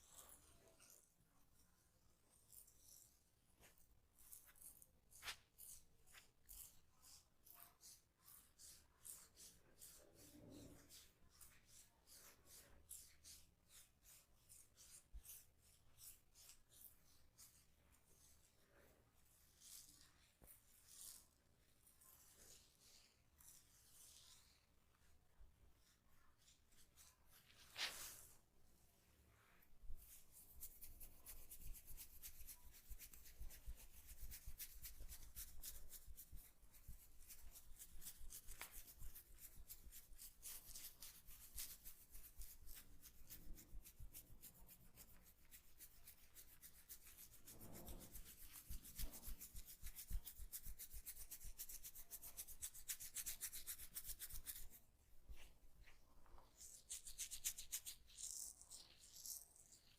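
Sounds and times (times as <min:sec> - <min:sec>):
hands rubbing skin: 0:03.6 - 0:07.2, 0:26.4 - 0:28.4, 0:29.3 - 0:59.1.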